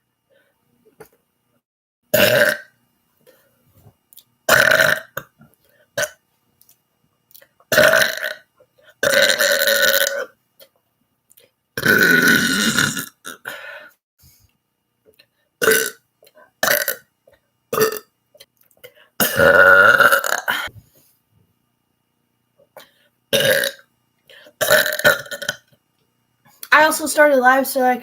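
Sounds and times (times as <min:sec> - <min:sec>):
person belching: 0:02.1 - 0:02.7, 0:04.5 - 0:05.3, 0:07.7 - 0:08.4, 0:09.0 - 0:10.3, 0:11.8 - 0:13.5, 0:15.6 - 0:16.0, 0:16.6 - 0:17.1, 0:17.7 - 0:18.1, 0:19.2 - 0:20.7, 0:23.3 - 0:23.8, 0:24.6 - 0:25.7.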